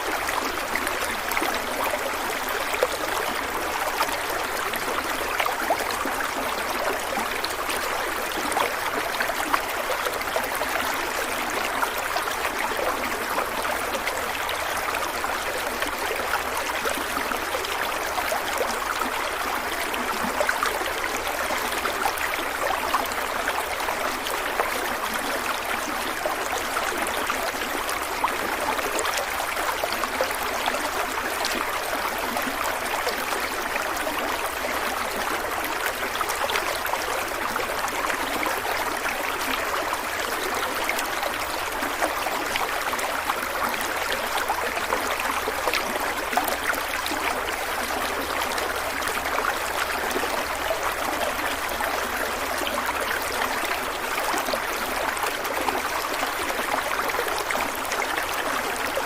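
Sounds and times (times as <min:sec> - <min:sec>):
stream flowing over rocks: 0:00.0 - 0:59.0.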